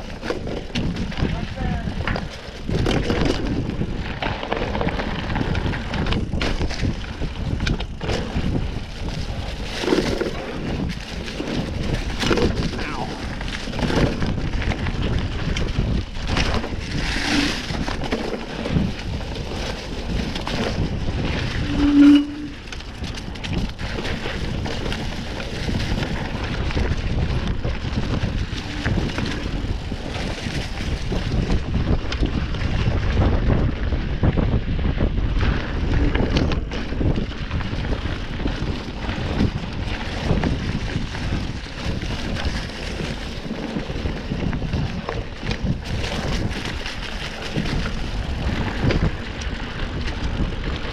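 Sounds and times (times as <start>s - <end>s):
bike rattling over bumps: 0.0s - 50.9s
bike tyres rolling on dirt: 0.0s - 50.9s
wind buffeting microphone: 0.0s - 50.9s
short loud squeal: 21.6s - 22.6s.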